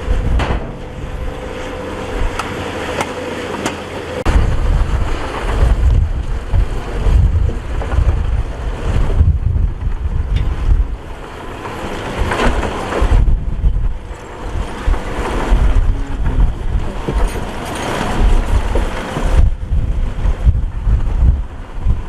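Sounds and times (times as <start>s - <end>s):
diesel machinery rumbling: 0.0s - 22.0s
wind buffeting microphone: 0.0s - 22.0s.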